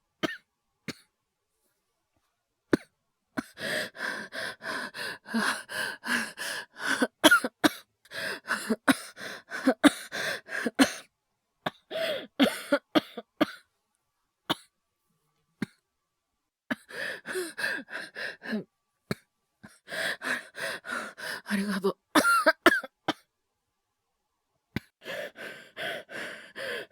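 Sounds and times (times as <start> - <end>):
man coughing: 22.2 - 22.9.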